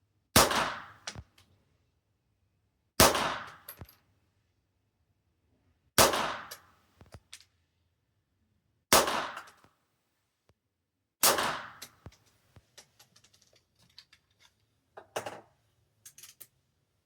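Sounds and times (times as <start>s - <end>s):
pistol shots: 0.4s - 1.1s, 3.0s - 3.7s, 6.0s - 6.7s, 8.9s - 9.6s, 11.2s - 12.0s
handling clicks and clacks: 11.8s - 15.3s.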